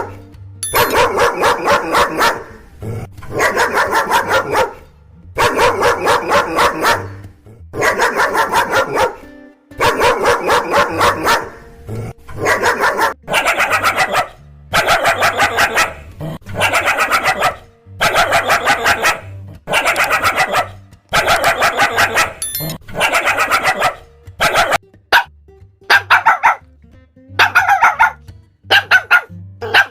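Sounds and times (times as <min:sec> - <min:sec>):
dog barking: 0:00.7 - 0:02.6, 0:03.3 - 0:07.2, 0:07.8 - 0:09.2, 0:09.8 - 0:11.6, 0:12.3 - 0:25.3, 0:25.9 - 0:26.6, 0:27.4 - 0:29.9.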